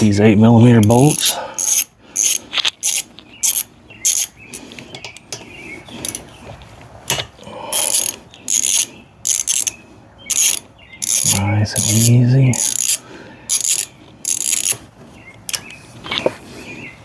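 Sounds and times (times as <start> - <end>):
socket ratchet clicking: 0.8 - 4.4, 7.7 - 14.8.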